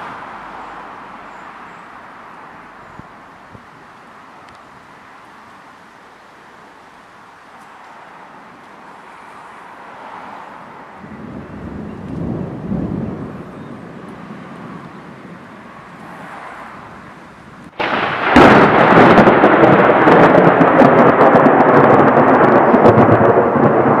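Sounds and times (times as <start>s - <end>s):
loud thunder crash with crackles: 11.0s - 14.2s, 17.7s - 24.0s
low rumble of thunder: 11.0s - 16.9s, 17.5s - 24.0s.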